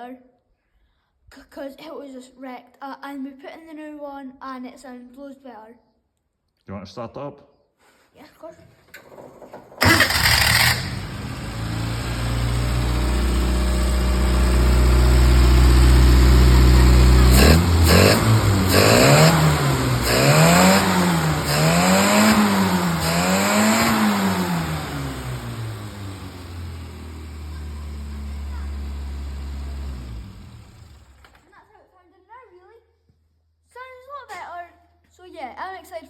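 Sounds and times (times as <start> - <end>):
racing car engine starting and revving: 9.8 - 31.4.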